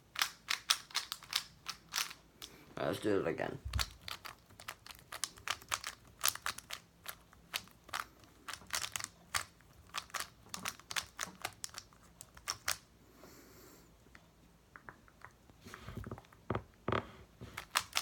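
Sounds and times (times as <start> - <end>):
speed cube clicking: 0.1 - 2.5, 3.7 - 12.8, 17.6 - 18.0.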